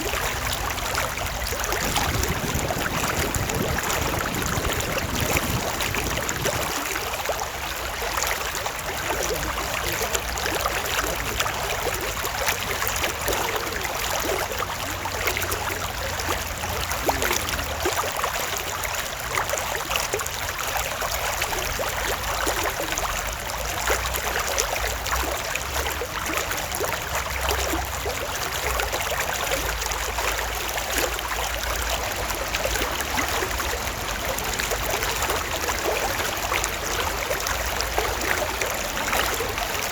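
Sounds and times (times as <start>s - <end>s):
stream trickling over stones: 0.0s - 39.9s
low rumble: 1.7s - 6.9s.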